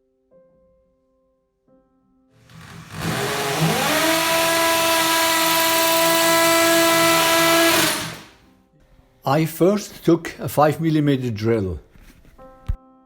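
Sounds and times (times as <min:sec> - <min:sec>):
impact drill boring into brick: 0:02.4 - 0:08.4.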